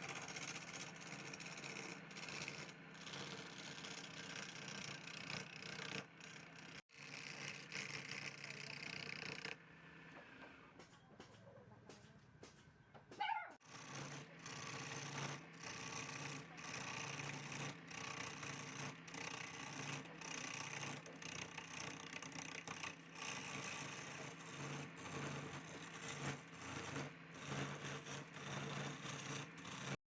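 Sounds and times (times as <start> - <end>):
lathe tool scraping wood: 0.0 - 9.6, 13.6 - 30.0
lathe motor hum: 13.7 - 30.0.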